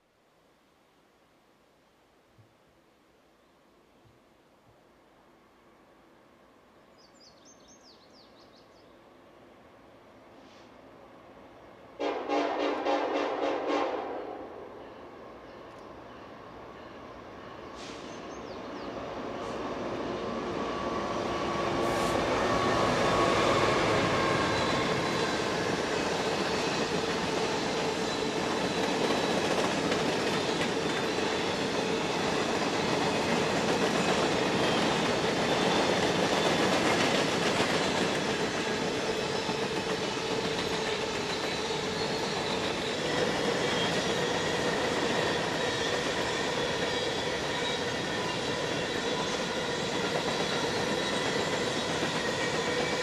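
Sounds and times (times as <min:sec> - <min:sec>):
train wheels rumbling: 0:14.9 - 0:53.0.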